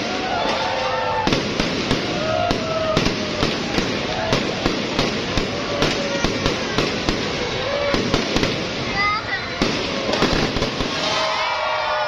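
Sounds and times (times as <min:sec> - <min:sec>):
fireworks bursting: 0:00.0 - 0:12.0.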